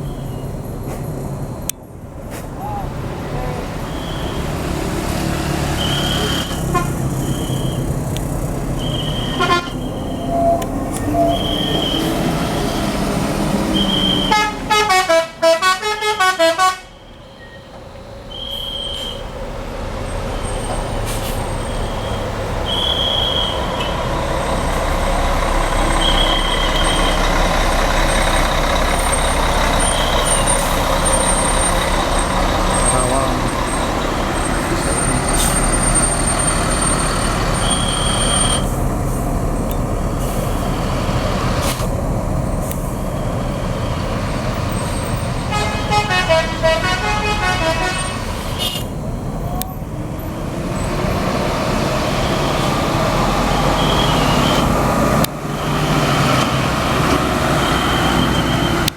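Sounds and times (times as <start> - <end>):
bus engines: 0.0 - 58.9
musical bus horn: 5.7 - 8.0, 8.8 - 17.6, 45.0 - 48.8.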